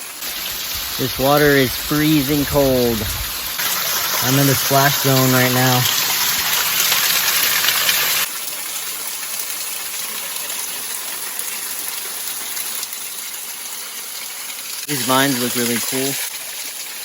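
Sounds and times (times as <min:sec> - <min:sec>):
waterfall rushing: 0:00.0 - 0:08.3.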